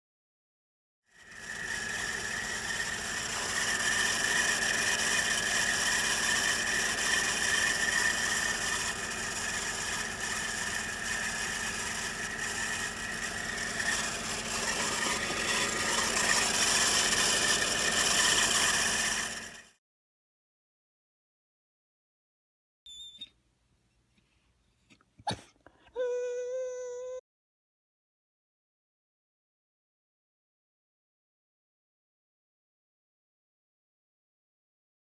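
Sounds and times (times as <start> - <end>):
high-pitched belt whine: 1.2 - 19.7
car engine running: 1.3 - 19.7.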